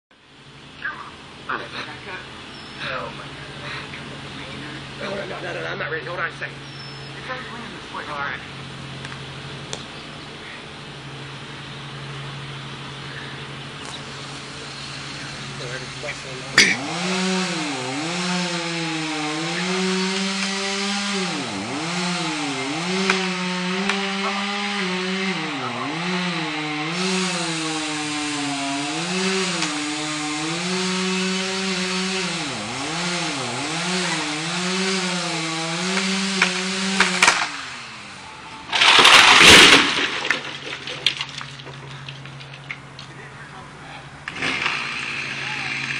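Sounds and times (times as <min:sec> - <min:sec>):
chainsaw cutting wood: 0:13.8 - 0:42.6, 0:44.2 - 0:45.9
tree crashing to ground: 0:38.6 - 0:42.7, 0:44.3 - 0:45.9.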